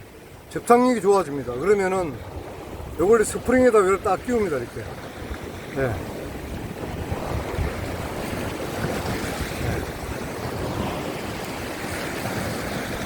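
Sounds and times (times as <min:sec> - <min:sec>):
sea surf washing against rocks: 0:00.0 - 0:13.0
wind buffeting microphone: 0:00.0 - 0:13.0.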